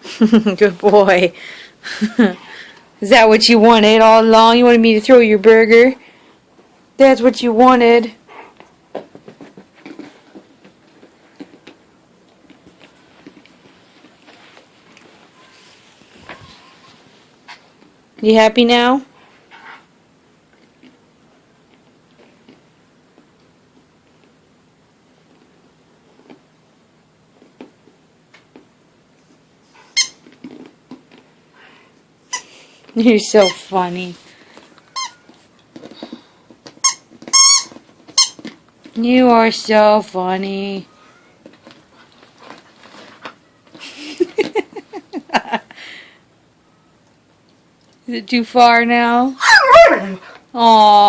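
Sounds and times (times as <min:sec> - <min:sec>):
dog whining: 0:49.4 - 0:50.4.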